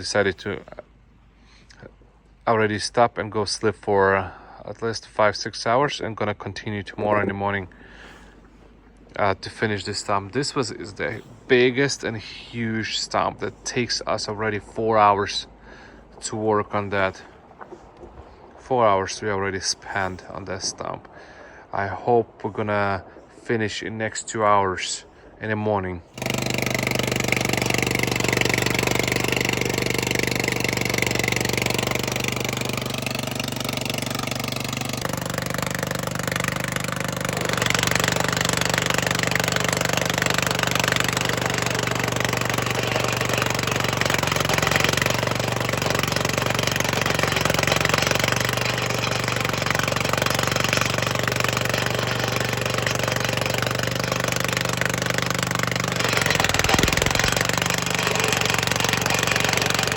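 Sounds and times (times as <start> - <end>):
harsh rough grinding noise: 5.3 - 59.9
stump grinder running: 7.0 - 18.0, 26.1 - 59.9.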